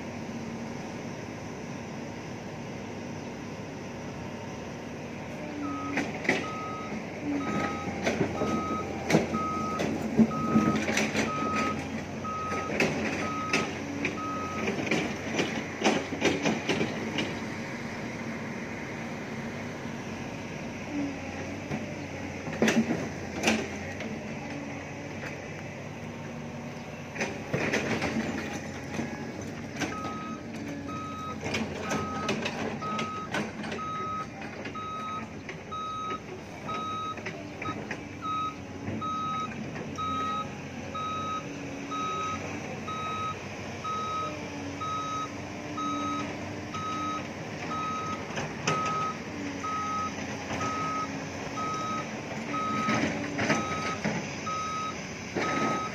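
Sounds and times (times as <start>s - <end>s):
heavy machinery engines running: 0.0s - 55.9s
backup alarm beeping: 5.6s - 14.7s, 29.9s - 48.2s, 48.8s - 53.0s, 53.6s - 55.9s.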